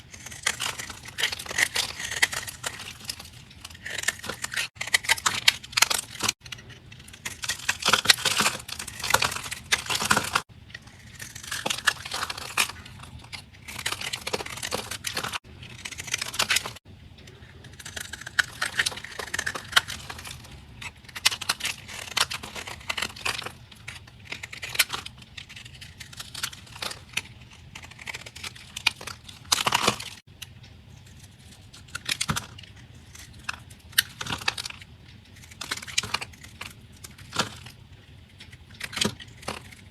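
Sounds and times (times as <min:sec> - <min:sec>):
knife cutting crunchy soap: 0:00.0 - 0:30.3.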